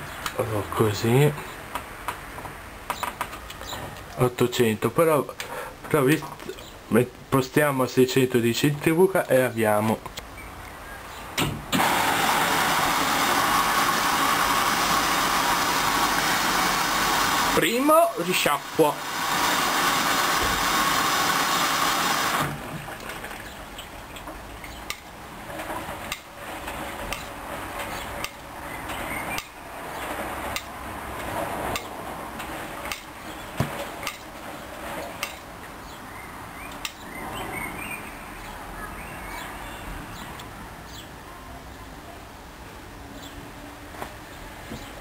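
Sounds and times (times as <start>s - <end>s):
washing machine water rush: 11.8s - 23.4s.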